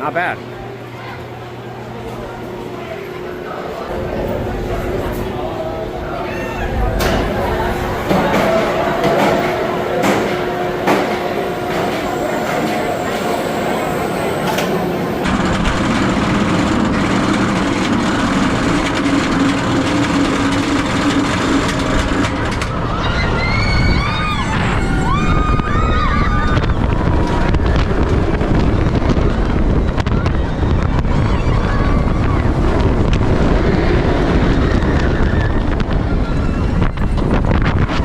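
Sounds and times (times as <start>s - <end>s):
steady low hum: 0.0s - 38.0s
wind rushing on microphone: 22.4s - 38.0s
riders screaming: 22.8s - 28.2s.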